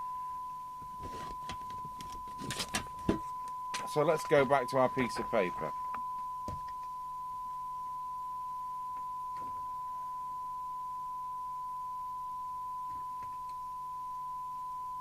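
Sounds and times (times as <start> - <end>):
steady test tone from radio speaker: 0.0 - 15.0.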